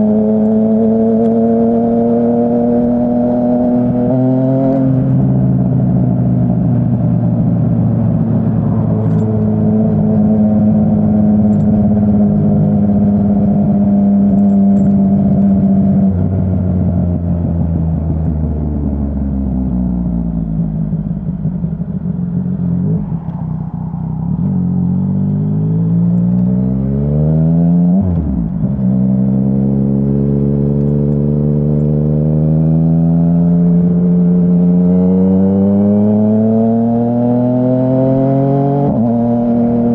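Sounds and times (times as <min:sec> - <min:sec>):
motorcycle engine exhaust revving: 0:05.2 - 0:27.2
quick gear change: 0:08.4 - 0:12.4, 0:14.2 - 0:15.6.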